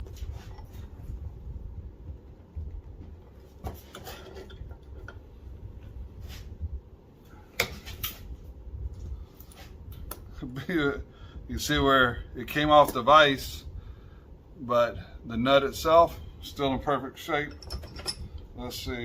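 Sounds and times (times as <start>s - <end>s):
low steady hum: 0.0s - 19.0s
metal clinks of pliers wrench: 17.5s - 18.3s.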